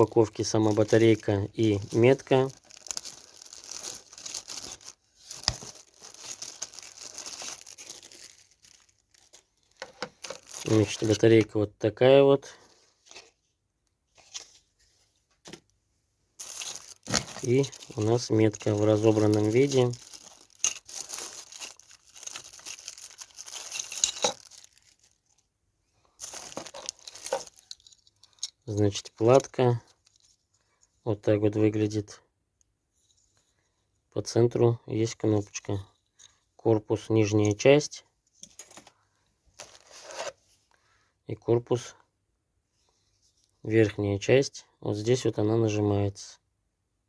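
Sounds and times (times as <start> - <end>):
package wrapping crinkling: 0.6 - 11.2, 16.4 - 25.2, 26.2 - 28.3, 39.6 - 40.2.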